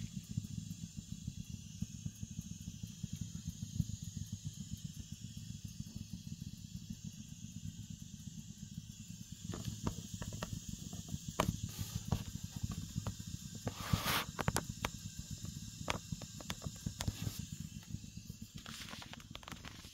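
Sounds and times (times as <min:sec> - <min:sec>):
gas heater rumbling: 0:00.0 - 0:19.9
sharp clicks and pops: 0:09.2 - 0:19.9
brief hiss: 0:13.6 - 0:14.6.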